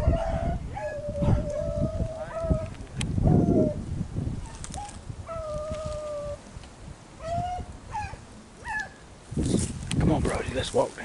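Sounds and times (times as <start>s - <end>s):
hounds baying: 0.0s - 2.7s
wind rumbling on microphone: 0.0s - 11.0s.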